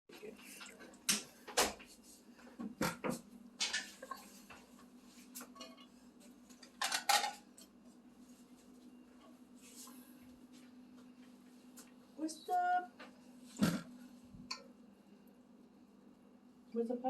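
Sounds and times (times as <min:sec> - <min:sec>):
dishes knocking and clattering: 0:02.6 - 0:04.2, 0:06.6 - 0:07.5.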